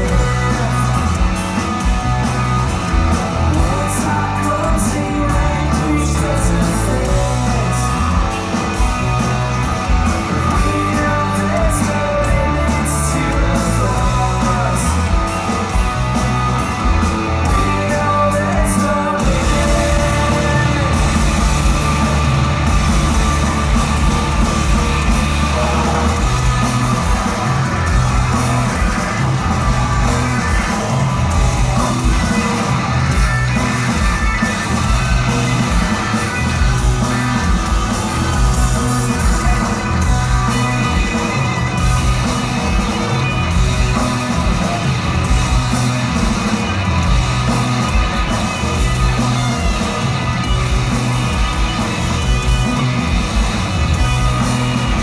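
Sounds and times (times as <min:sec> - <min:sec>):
drum and cymbal strikes: 0:00.0 - 0:55.0
rock band playing live: 0:00.0 - 0:55.0
person singing: 0:03.5 - 0:08.2, 0:10.3 - 0:15.1, 0:17.5 - 0:21.8.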